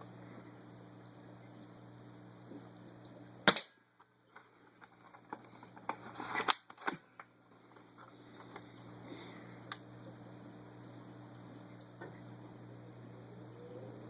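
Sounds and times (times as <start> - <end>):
airsoft rifle shot: 3.5 - 3.8.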